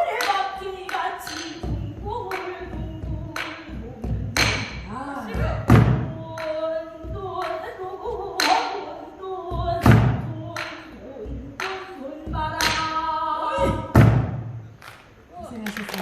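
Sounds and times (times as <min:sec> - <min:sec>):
barrel drum strokes: 0:09.4 - 0:14.7.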